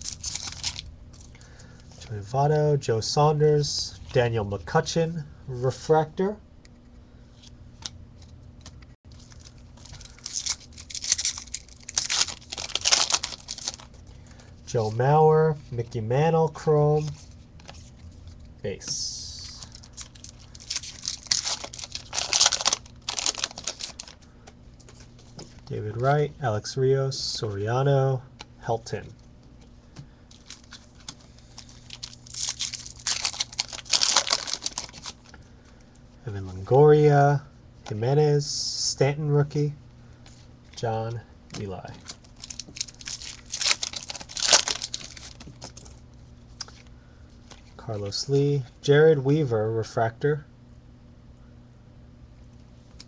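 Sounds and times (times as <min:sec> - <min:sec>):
foil wrapper tearing and rustling: 0:00.0 - 0:00.9, 0:09.1 - 0:14.0, 0:19.4 - 0:24.2, 0:30.3 - 0:35.3, 0:41.9 - 0:45.9.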